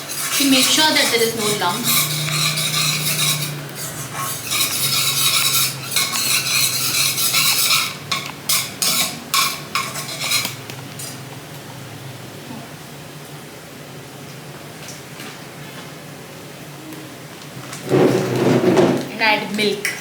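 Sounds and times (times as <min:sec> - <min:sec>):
utensil scraping a pan: 0:00.0 - 0:11.2.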